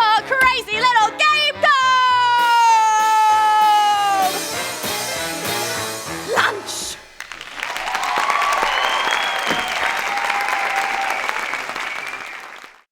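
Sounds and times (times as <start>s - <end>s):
people cheering: 6.5s - 12.9s
audience applauding: 7.1s - 12.9s.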